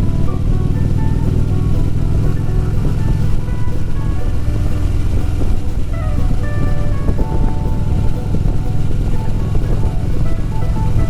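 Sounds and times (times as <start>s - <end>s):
motorcycle engine rumble: 0.0s - 11.0s
music with held melodic notes: 0.0s - 11.0s
wind noise on microphone: 0.0s - 11.0s.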